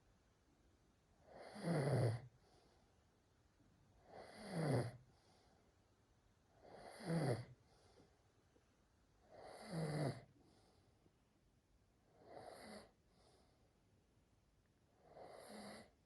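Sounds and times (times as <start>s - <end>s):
cat snoring: 1.2s - 2.3s, 4.0s - 5.0s, 6.6s - 7.6s, 9.2s - 10.3s, 12.1s - 13.4s, 14.9s - 16.0s.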